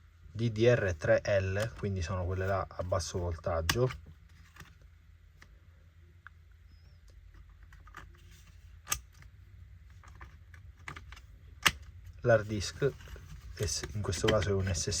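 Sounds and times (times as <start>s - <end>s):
low steady hum: 0.0s - 15.0s
clicks and taps handling laptop: 13.6s - 15.0s.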